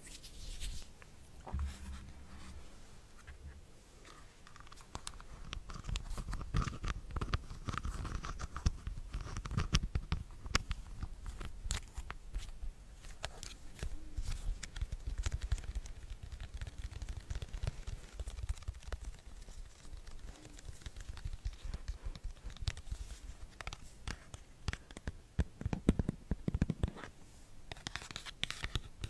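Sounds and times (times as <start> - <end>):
clicks scratches and rustling: 0.1 - 29.0
low rumble of handling: 1.4 - 3.8.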